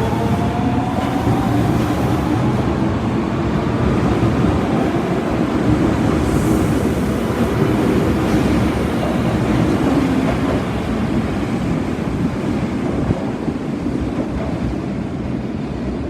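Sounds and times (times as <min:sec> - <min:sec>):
subway train rumbling: 0:00.0 - 0:16.0.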